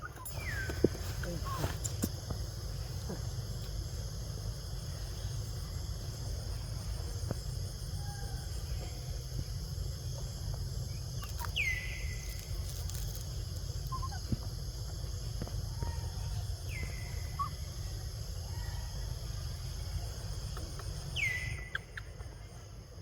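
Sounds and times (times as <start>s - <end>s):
constant low rumble: 0.0s - 23.0s.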